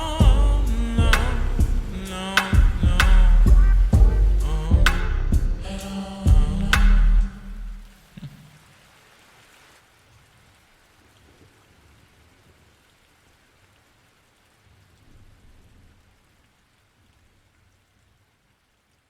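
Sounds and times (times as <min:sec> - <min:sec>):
low rumble: 0:00.0 - 0:08.1
faint hiss of rainfall: 0:00.0 - 0:19.0.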